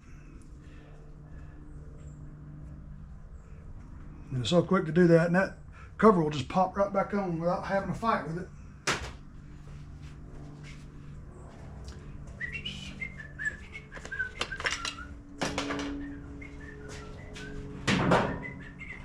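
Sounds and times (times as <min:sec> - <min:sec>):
steady low hum: 0:00.0 - 0:19.0
person whistling a tune: 0:12.4 - 0:15.1.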